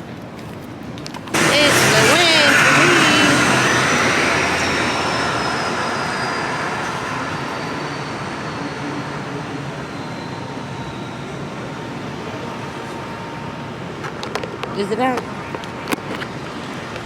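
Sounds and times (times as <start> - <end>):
vehicle passing by: 1.4 - 10.0
faint whine falling in pitch: 1.4 - 13.7.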